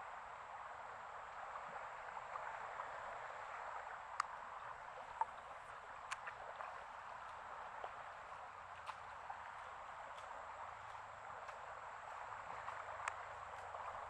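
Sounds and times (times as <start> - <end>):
floodwater rushing: 0.0 - 14.0.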